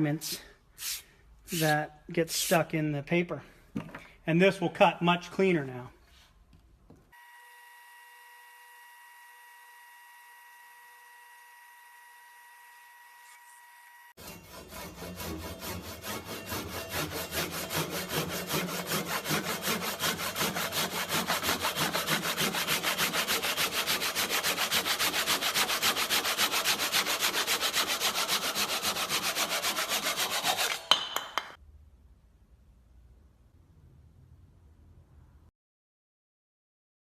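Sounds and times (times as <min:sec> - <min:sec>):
hand rubbing on sandpaper: 0:00.2 - 0:02.7, 0:14.8 - 0:30.9.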